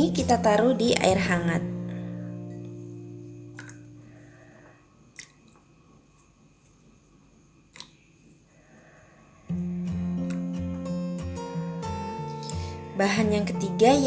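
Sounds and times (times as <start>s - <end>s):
acoustic guitar music: 0.0s - 4.8s, 9.5s - 14.0s.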